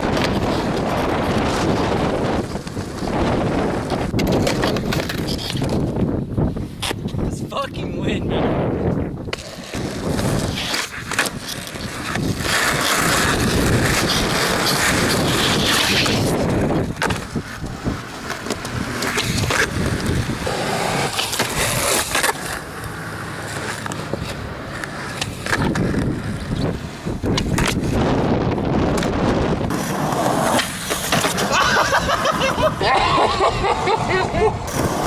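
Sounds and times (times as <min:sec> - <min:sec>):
skateboard clacks popping and landing: 0:00.0 - 0:06.0, 0:09.2 - 0:32.2, 0:34.6 - 0:35.0
skateboard wheels rolling on pavement: 0:00.0 - 0:35.0.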